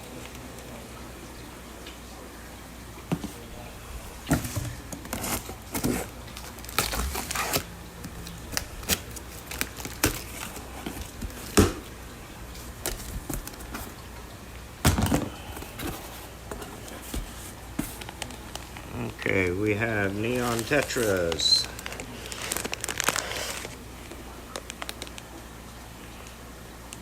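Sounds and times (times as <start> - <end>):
low room hum: 0.0 - 27.0
plastic bags crinkling: 4.0 - 14.1, 14.9 - 25.4.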